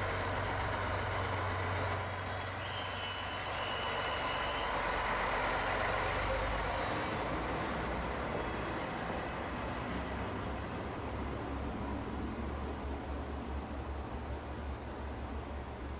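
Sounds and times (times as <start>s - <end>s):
diesel train engine hum: 0.0s - 15.9s
hiss: 2.0s - 4.8s
faint high squeal: 2.0s - 7.3s.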